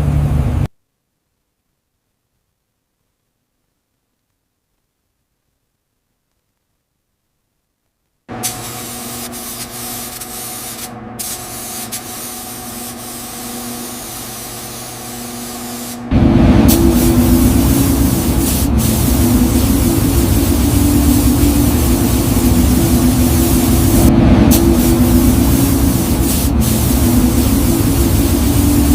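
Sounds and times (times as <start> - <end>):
low machine hum: 0.0 - 0.7, 8.3 - 28.9
spray gun hissing: 8.4 - 28.9
deep rumbling noise: 16.1 - 28.9.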